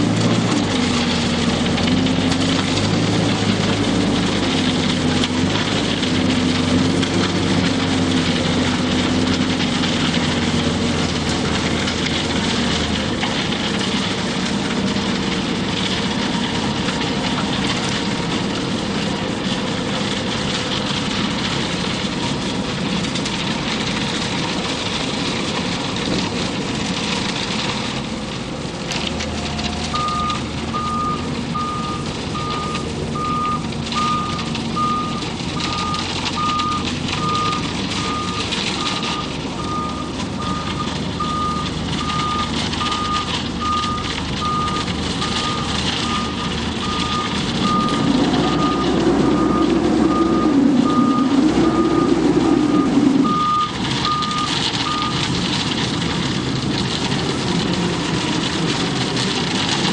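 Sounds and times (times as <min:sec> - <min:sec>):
truck engine running: 0:00.0 - 0:59.9
reversing alarm beeping: 0:29.4 - 0:55.3.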